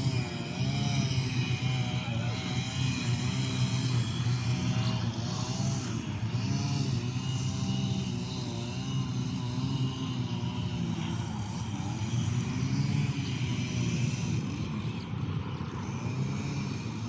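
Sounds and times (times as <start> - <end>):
engine-like drone: 0.0 - 17.0.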